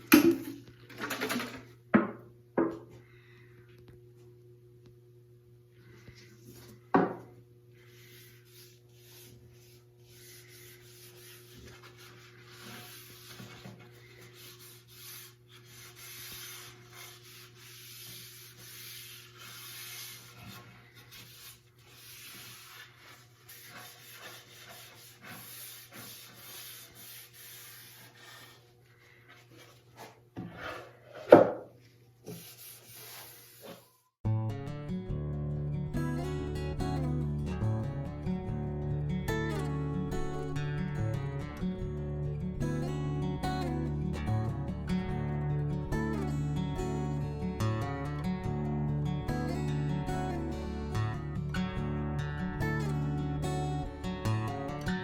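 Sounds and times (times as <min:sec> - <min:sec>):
hand sanding wood: 0:07.9 - 0:30.9, 0:32.2 - 0:33.9.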